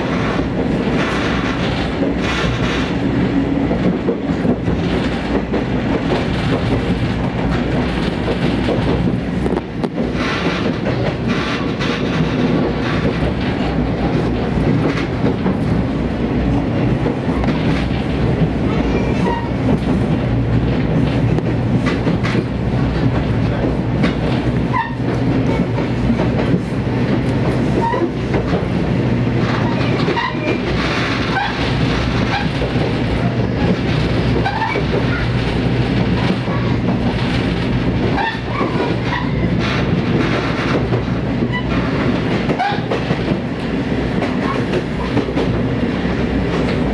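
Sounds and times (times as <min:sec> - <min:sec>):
diesel train engine hum: 0:00.0 - 0:46.9
wheels clicking over rail joints: 0:03.7 - 0:46.9.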